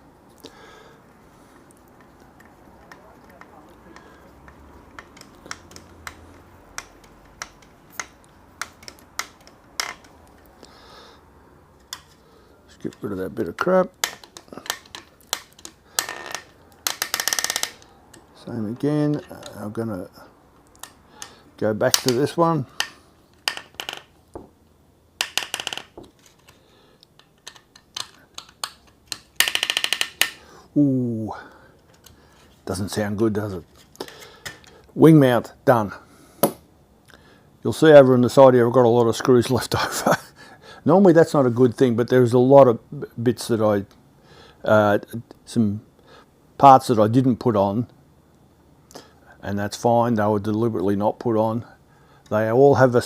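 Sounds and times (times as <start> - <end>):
small tools clicking on plastic: 1.6 - 10.5, 12.9 - 18.3, 25.2 - 30.4.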